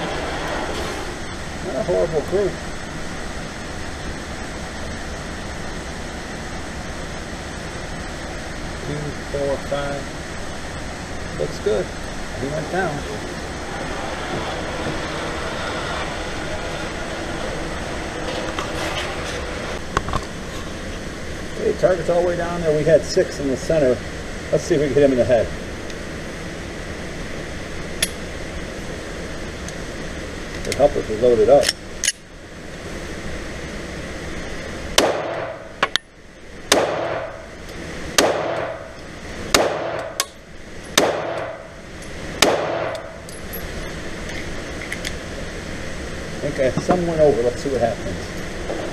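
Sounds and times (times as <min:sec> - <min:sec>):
motorized target carrier running: 0:00.0 - 0:05.8, 0:08.3 - 0:22.8
pistol shots echoing indoors: 0:35.0 - 0:35.6, 0:36.7 - 0:37.4, 0:38.2 - 0:38.8, 0:39.6 - 0:40.2, 0:41.0 - 0:41.6, 0:42.4 - 0:43.1.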